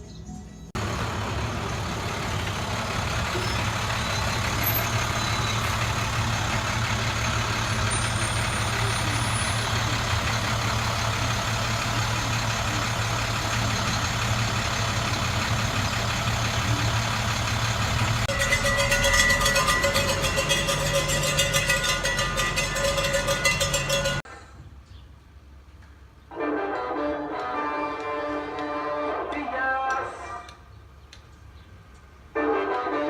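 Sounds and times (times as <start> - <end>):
street noise: 0.0 - 33.0
truck engine running: 0.8 - 24.3.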